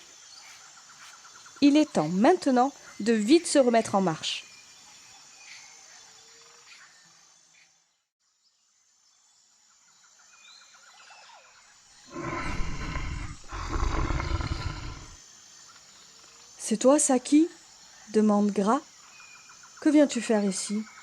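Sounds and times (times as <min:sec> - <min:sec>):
insects: 0:00.0 - 0:21.0
birds: 0:12.1 - 0:15.2
tiger roaring: 0:12.1 - 0:15.2.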